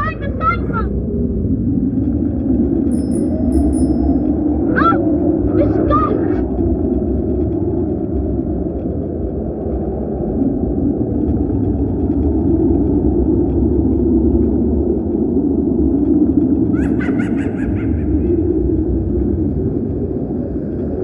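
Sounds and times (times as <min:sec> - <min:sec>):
low rumbling noise: 0:00.0 - 0:21.0.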